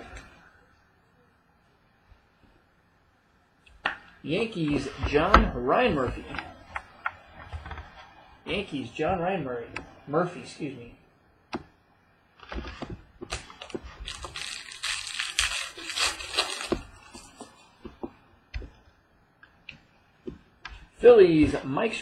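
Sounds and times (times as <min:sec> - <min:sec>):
packaging crinkling: 0:12.4 - 0:17.5.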